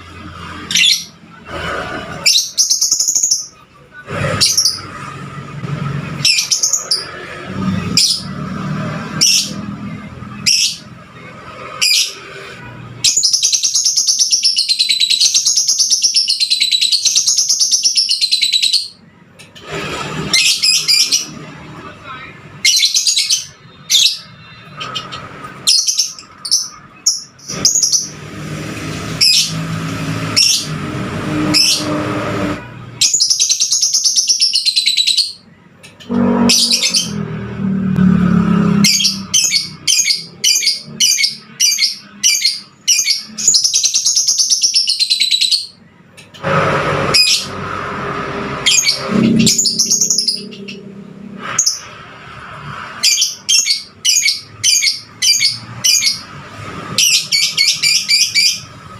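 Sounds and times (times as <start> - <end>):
lovebird chirping and warbling: 0.4 - 1.2, 2.1 - 3.5, 6.2 - 8.4, 9.1 - 10.9, 11.7 - 19.0, 20.3 - 21.5, 22.6 - 28.2, 33.0 - 35.4, 36.0 - 37.2, 38.6 - 45.8, 48.6 - 52.0, 53.0 - 56.3, 57.0 - 58.9.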